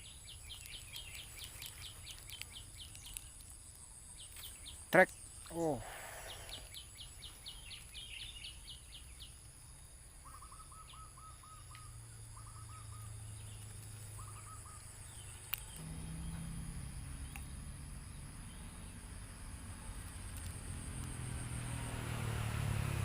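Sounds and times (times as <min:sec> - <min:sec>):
birds chirping: 0:00.0 - 0:23.0
low hum: 0:11.8 - 0:23.0.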